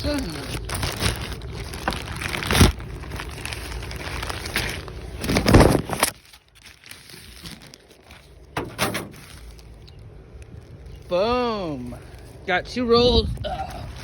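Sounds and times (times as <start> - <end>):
packaging crinkling and tearing: 0.0 - 11.1.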